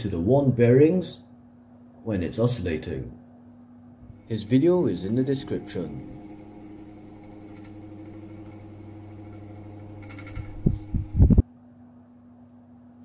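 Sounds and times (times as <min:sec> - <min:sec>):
table fan motor humming: 0:04.0 - 0:11.4.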